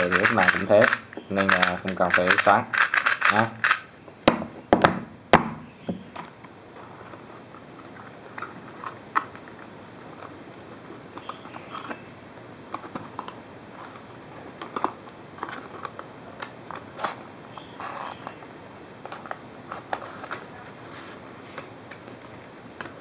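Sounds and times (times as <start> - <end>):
small plastic items clicking: 0.0 - 3.9.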